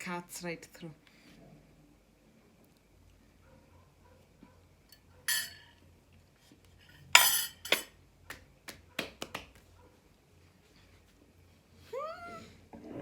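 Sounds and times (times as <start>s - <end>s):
cutlery clinking on a plate: 4.9s - 5.8s, 6.9s - 8.0s.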